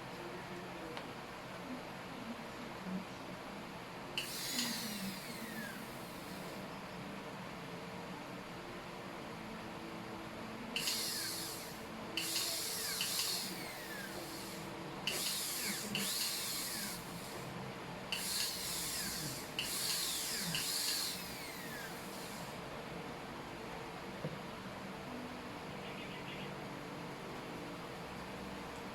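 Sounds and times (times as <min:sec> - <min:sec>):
dental drill whining: 0:04.2 - 0:06.7, 0:10.8 - 0:17.5, 0:18.1 - 0:22.6.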